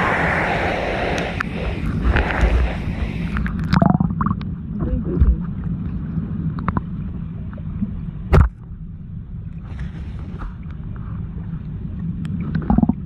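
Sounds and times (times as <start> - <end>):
underwater gurgling: 0.0 - 8.5
muffled underwater rumble: 0.0 - 13.0.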